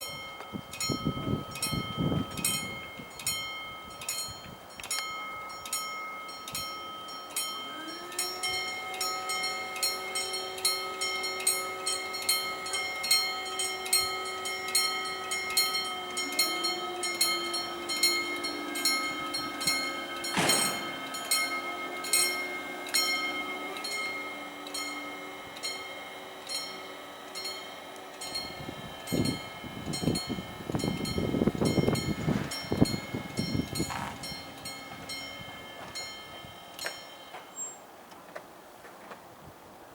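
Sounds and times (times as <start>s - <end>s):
level crossing warning bell: 0.0s - 38.0s
rising whine: 7.4s - 37.6s.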